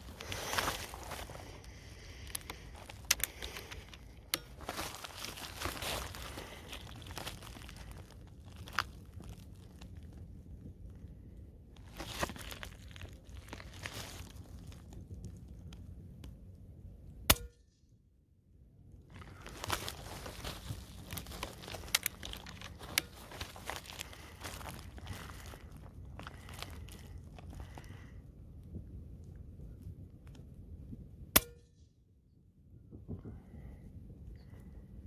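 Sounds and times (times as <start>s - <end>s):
rustling handling noise: 0.0s - 10.2s, 11.8s - 15.8s, 19.1s - 28.0s.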